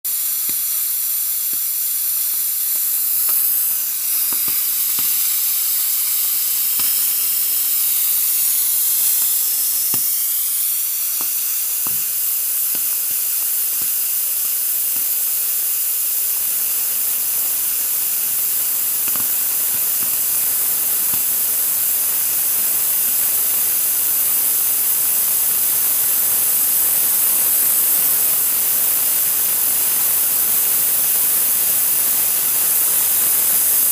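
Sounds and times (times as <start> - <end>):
faucet hissing: 0.1 - 23.2.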